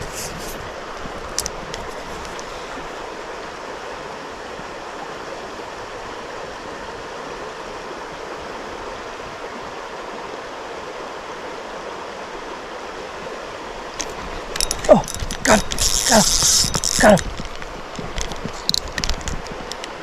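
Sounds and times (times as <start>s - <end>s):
creek water running: 0.0s - 20.0s.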